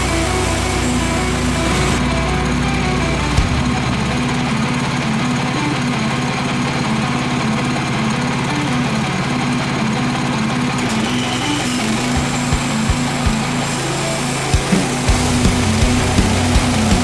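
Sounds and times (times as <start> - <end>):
small gasoline engine running: 0.0 - 17.0
saw blade cutting log: 10.8 - 15.8.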